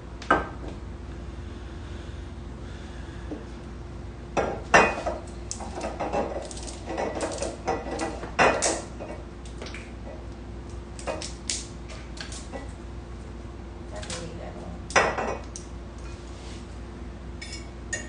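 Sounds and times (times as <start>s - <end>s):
glass and hard parts clinking: 17.4s - 18.0s.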